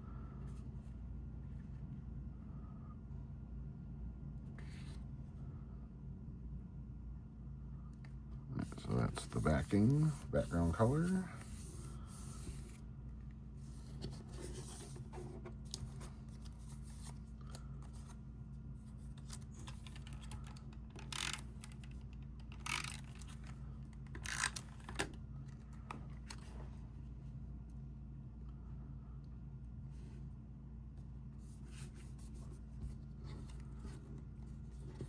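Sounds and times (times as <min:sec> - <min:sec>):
steady low hum: 0:00.0 - 0:35.0
cardstock rustling and scraping: 0:08.6 - 0:12.8, 0:13.7 - 0:18.2.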